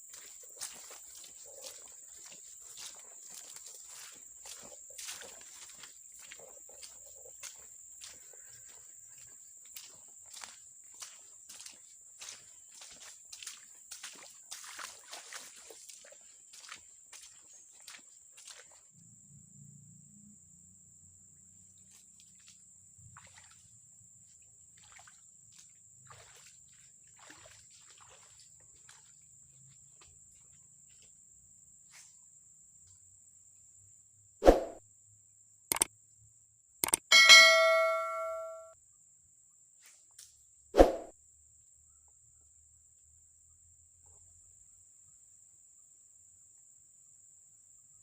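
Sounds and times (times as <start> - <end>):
sharp clicks: 36.8 - 37.1
metallic ding ringing: 37.1 - 38.7.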